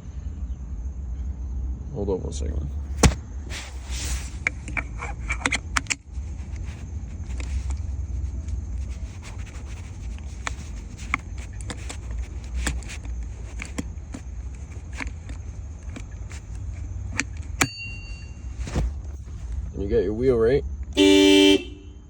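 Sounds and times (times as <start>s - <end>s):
steady low rumble: 0.0s - 21.0s
clicks and scraping of parts: 3.0s - 17.7s.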